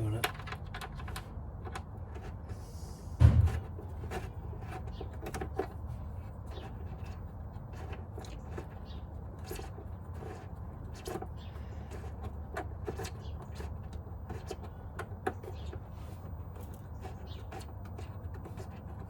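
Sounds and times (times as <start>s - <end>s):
heavy thump: 3.0s - 3.9s.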